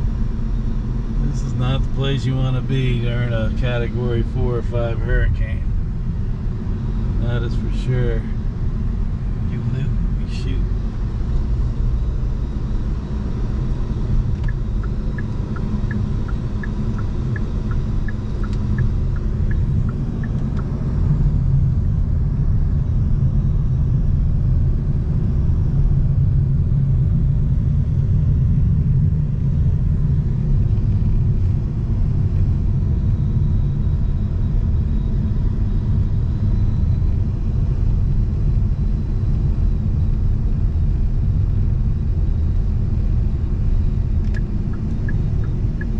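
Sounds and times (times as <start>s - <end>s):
car road and engine rumble: 0.0s - 45.9s
light two-pitch ticking: 14.3s - 20.8s, 44.2s - 45.9s.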